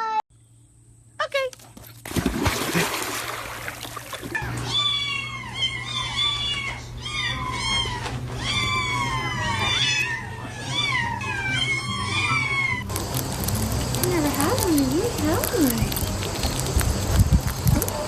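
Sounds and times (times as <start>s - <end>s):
steady low hum: 0.3s - 18.0s
cat meowing: 4.6s - 12.9s.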